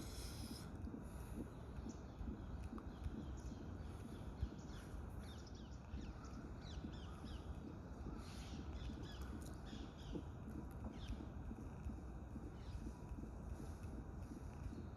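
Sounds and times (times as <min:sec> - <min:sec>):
steady low rumble: 0:00.0 - 0:14.9
birds chirping: 0:01.8 - 0:13.7.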